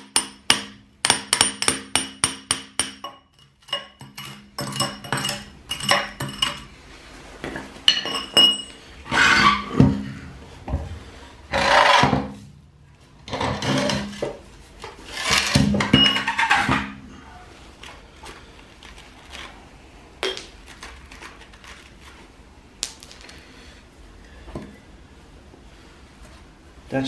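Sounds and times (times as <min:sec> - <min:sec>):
chisel scraping and chipping: 0:01.1 - 0:06.7, 0:13.3 - 0:16.7.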